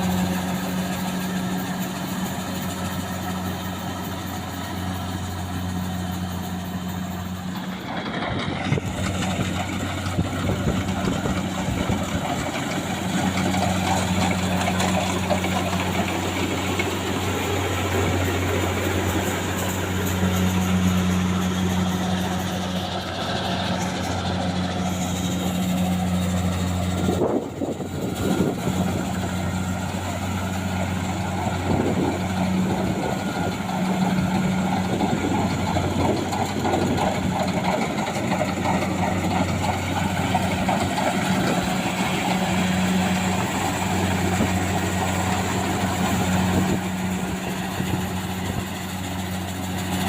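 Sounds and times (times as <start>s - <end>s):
combine harvester diesel engine: 0.0s - 50.0s.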